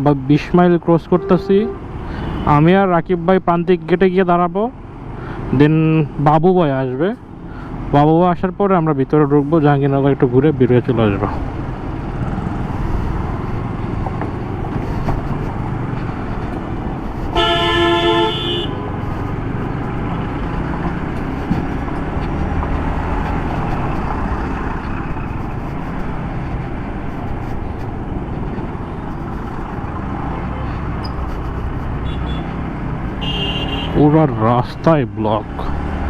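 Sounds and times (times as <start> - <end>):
motorcycle engine and road noise: 0.0 - 36.0
vehicle horn: 1.0 - 2.6, 17.3 - 19.0, 32.0 - 34.1.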